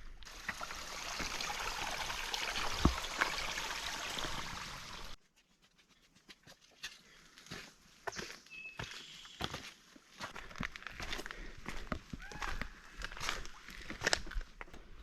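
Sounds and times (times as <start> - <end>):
rushing hiss of water: 0.3 - 5.2.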